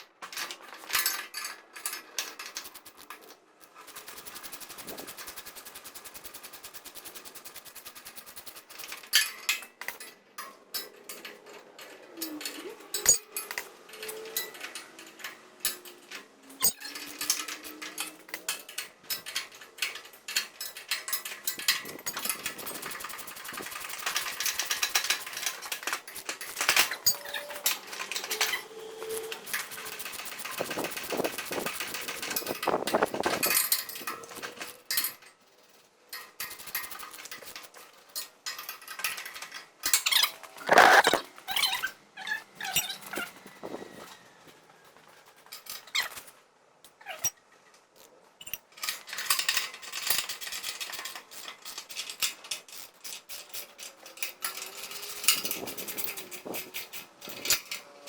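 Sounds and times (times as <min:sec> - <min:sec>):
rapid clicking of tightening bolts: 0:00.3 - 0:12.0, 0:16.6 - 0:28.6, 0:29.2 - 0:35.3.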